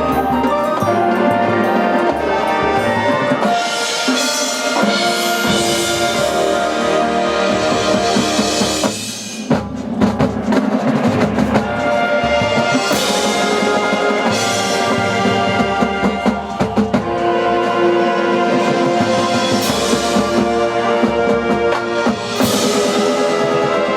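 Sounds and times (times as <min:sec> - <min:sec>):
wind instruments holding chords: 0:00.0 - 0:23.9
drum hits: 0:07.5 - 0:18.0.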